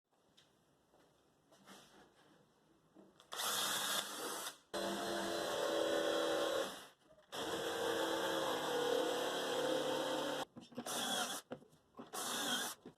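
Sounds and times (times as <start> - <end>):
handheld power tool motor hum: 12.2 - 12.8.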